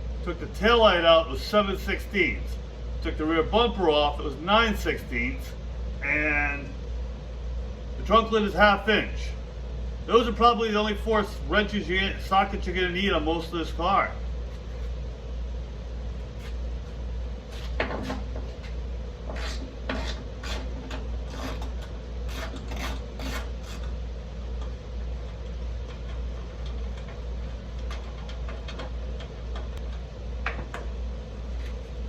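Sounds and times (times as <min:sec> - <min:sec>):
steady low hum: 0:00.0 - 0:32.0
ratchet clicks and scraping: 0:25.3 - 0:30.8.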